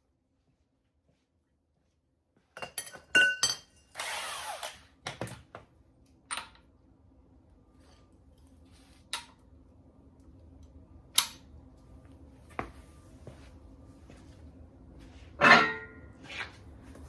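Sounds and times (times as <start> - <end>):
metal hand tools clanking: 15.4 - 16.0.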